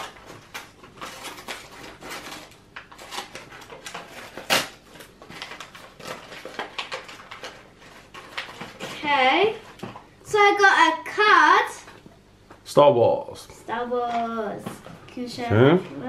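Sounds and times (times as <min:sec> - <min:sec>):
packaging and paper crackling: 0:00.0 - 0:10.0.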